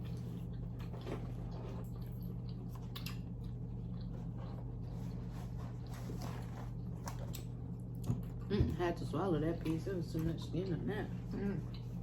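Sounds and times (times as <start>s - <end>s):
person chewing meat: 0.0s - 8.5s
steady low hum: 0.0s - 12.0s.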